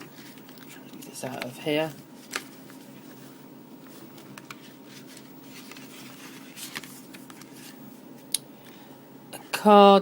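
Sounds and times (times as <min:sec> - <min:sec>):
paper rustling: 0:00.0 - 0:08.0
low steady hum: 0:00.0 - 0:10.0.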